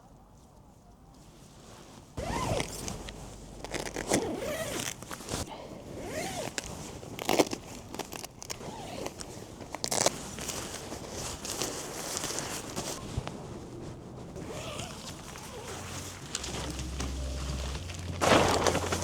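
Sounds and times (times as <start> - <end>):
zipper being pulled: 2.2 - 13.0, 14.4 - 19.0
sharp clicks and rustles: 6.4 - 19.0.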